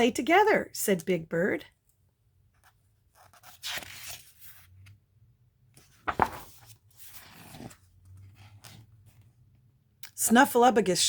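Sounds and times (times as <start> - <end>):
paper page turning: 2.6 - 5.0, 5.8 - 9.2
page slapping down: 6.0 - 7.8.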